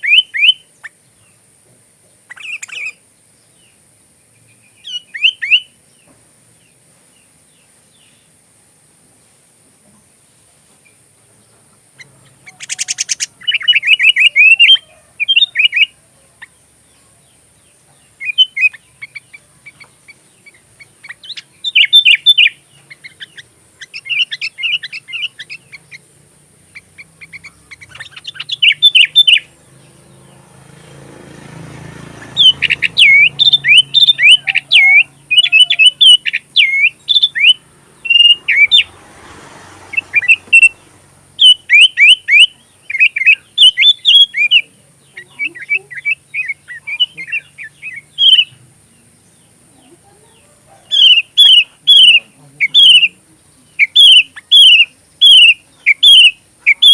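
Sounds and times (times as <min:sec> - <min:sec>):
bulbul singing chirpy notes: 0:00.0 - 0:01.1, 0:12.0 - 0:39.0, 0:39.8 - 0:56.9.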